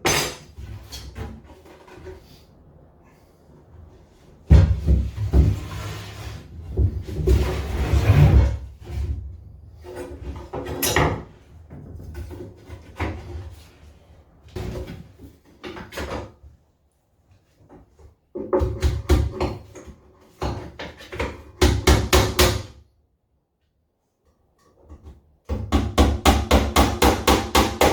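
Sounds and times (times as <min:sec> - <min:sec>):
hammer tapping nails into wood: 0:25.5 - 0:27.9.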